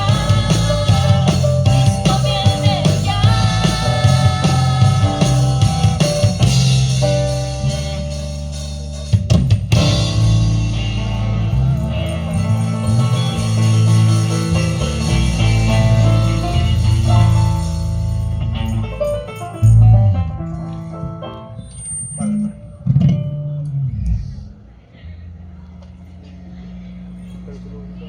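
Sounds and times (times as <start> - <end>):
upbeat band music with singing: 0.0 - 18.1
drum hits: 9.2 - 11.5.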